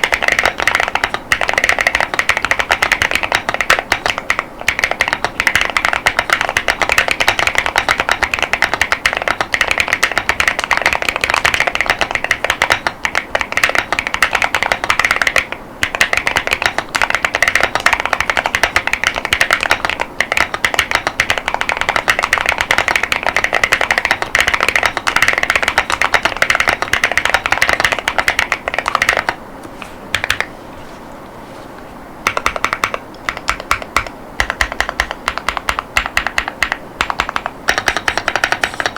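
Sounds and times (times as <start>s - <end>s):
mechanical keyboard typing: 0.0s - 29.4s, 32.2s - 38.9s.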